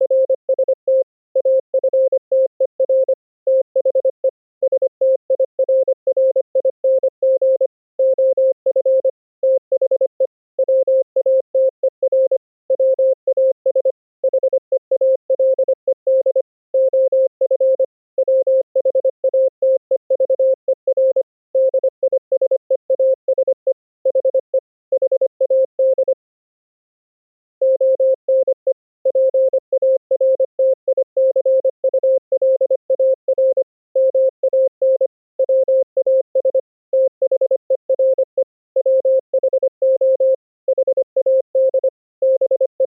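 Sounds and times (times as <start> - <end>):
morse code tone: 27.6 - 38.2, 38.8 - 42.9.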